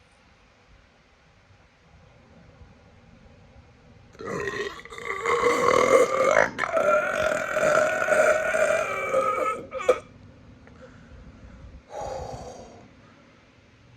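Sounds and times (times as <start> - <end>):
long loud burp: 4.2 - 10.1
short breathy exhale: 10.8 - 13.3.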